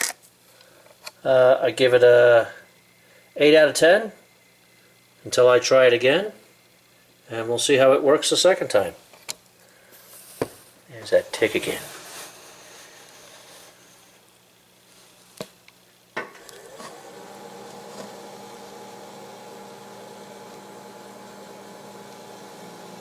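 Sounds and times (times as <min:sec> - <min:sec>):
electric motor humming: 0:16.2 - 0:23.0.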